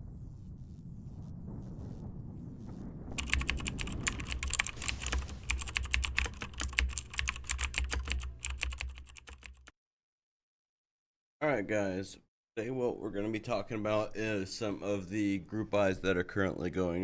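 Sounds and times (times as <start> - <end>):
mechanical keyboard typing: 3.2 - 9.7.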